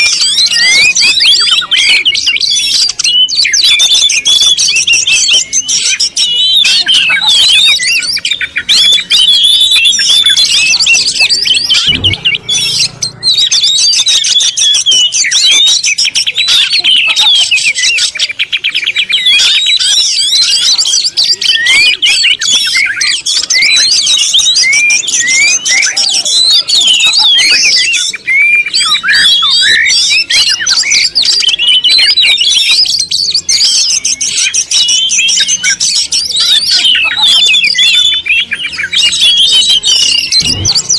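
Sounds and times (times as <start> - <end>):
chorus of chirping birds: 0.0 - 40.9.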